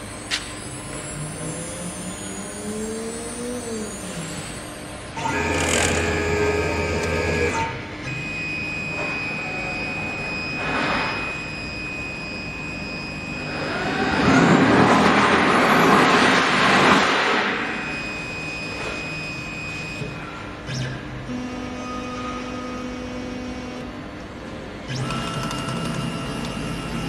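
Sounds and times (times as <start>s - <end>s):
router spindle whining: 0.9s - 7.7s.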